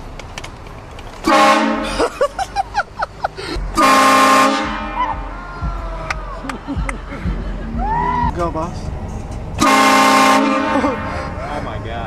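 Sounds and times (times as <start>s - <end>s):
train horn blasts: 1.2s - 1.9s, 3.8s - 5.3s, 9.6s - 11.2s.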